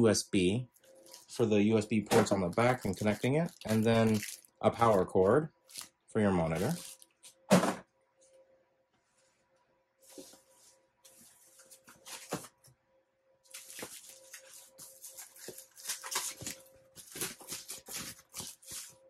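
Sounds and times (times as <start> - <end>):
plastic and foam crinkling: 0.7 - 7.4, 13.5 - 19.0.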